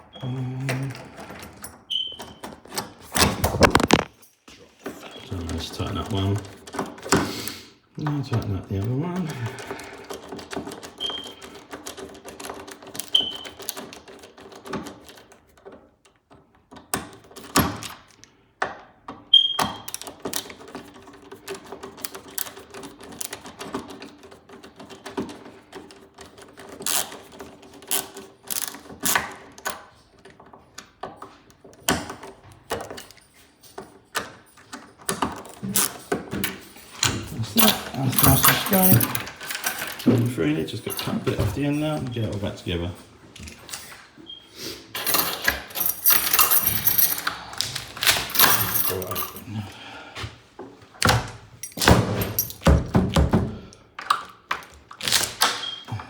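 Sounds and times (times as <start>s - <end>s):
screwdriver clicks and metal scrapes: 3.4s - 4.2s.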